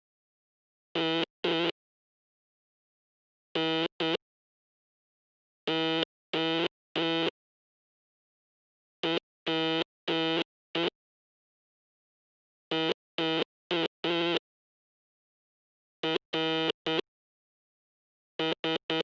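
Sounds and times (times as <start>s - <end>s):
morse code buzzy tone: 1.0s - 1.8s, 3.6s - 4.2s, 5.7s - 7.4s, 9.0s - 11.0s, 12.7s - 14.4s, 16.0s - 17.1s, 18.4s - 19.0s.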